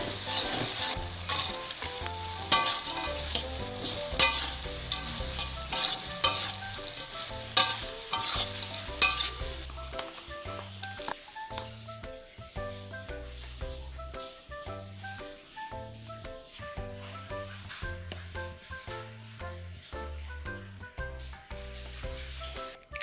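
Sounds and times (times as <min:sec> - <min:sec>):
spatula scraping a pan: 0:00.0 - 0:22.8
food sizzling in hot oil: 0:00.0 - 0:23.0.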